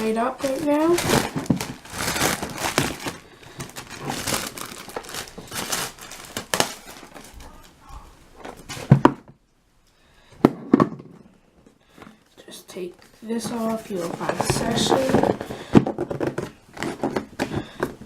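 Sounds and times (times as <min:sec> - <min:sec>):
packaging crinkling and tearing: 0:00.0 - 0:07.8.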